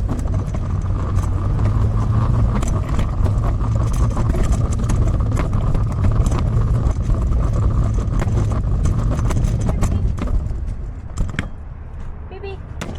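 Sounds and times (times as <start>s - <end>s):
rattling clicks and knocks: 0.0s - 11.7s
wagon wheels rumbling on pavement: 0.0s - 12.0s.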